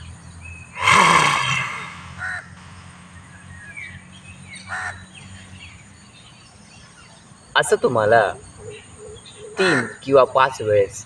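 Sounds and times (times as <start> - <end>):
person roaring exhale: 0.8 - 2.4.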